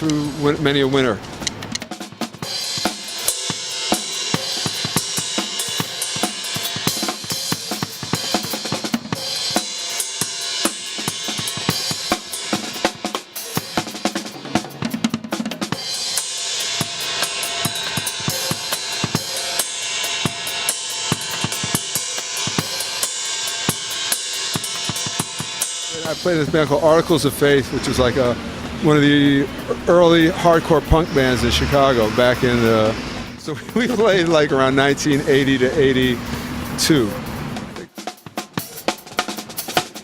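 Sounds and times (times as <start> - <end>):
cymbals washing: 0.0 - 40.0.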